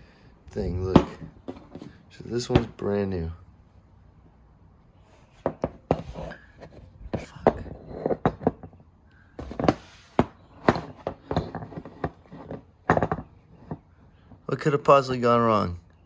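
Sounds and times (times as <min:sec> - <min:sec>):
hard parts clicking and knocking: 0:05.4 - 0:14.5.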